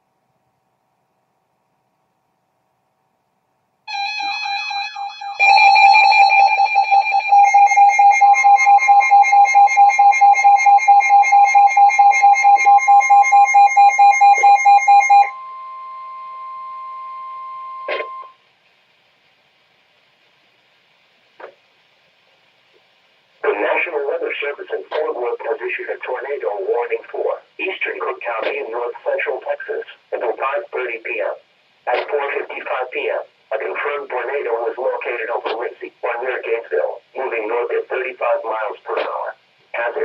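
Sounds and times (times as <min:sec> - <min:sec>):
electronic alarm beeping: 0:03.9 - 0:18.4
steady alarm tone: 0:03.9 - 0:18.4.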